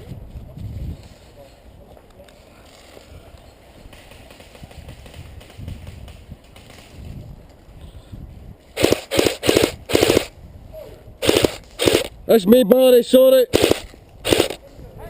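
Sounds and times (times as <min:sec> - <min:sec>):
airsoft rifle firing bursts: 0:08.8 - 0:10.3, 0:11.2 - 0:12.1, 0:13.5 - 0:14.6.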